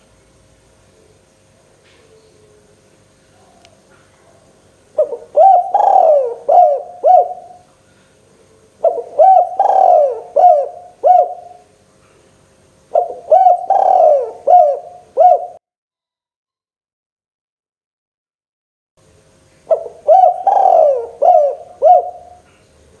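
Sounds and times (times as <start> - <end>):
dove cooing: 3.4 - 7.7, 8.4 - 11.7, 12.9 - 15.6, 19.7 - 22.6.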